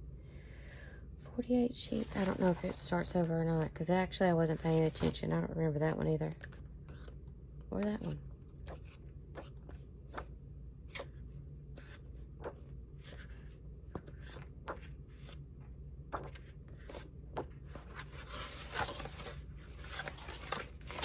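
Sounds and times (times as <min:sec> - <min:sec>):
steady low hum: 0:00.0 - 0:21.0
paper pages rustling: 0:04.6 - 0:05.2, 0:16.1 - 0:21.0.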